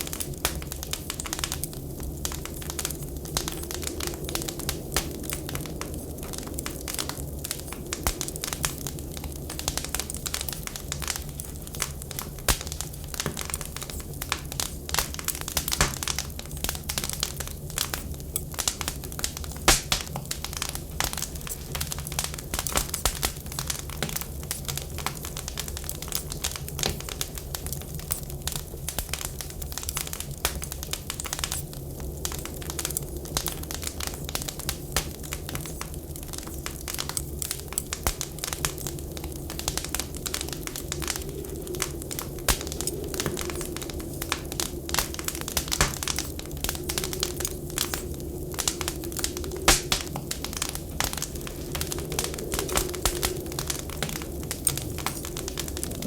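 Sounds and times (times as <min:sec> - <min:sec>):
wood fire crackling and popping: 0:00.0 - 0:56.0
steady low rumble: 0:35.2 - 0:56.0.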